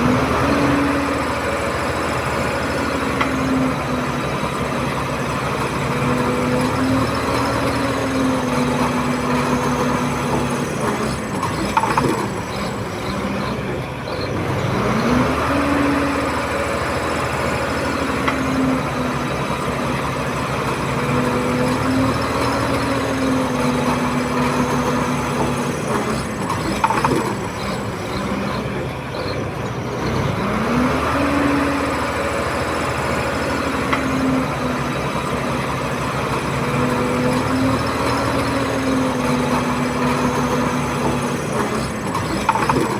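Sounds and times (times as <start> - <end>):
bulldozer diesel engine running: 0.0 - 42.9.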